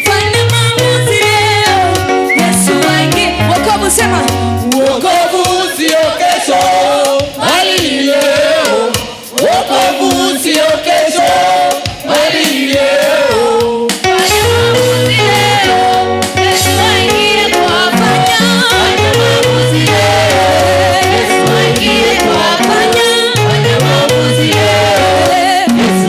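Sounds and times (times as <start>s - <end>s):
steady bass line: 0.0s - 4.8s, 14.2s - 26.0s
gospel choir singing: 0.8s - 26.0s.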